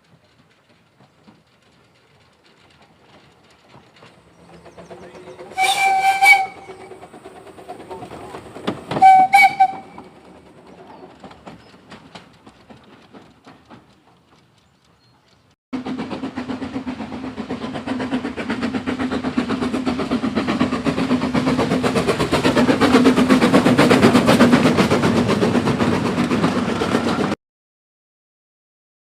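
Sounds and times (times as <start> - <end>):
running locomotive chuffing beat: 0.0 - 27.4
steam locomotive whistles: 4.4 - 10.4.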